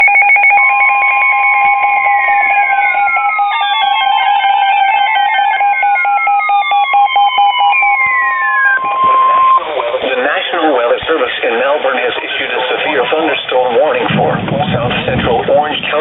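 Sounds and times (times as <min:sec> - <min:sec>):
alternating electronic alert beeps: 0:00.0 - 0:10.6.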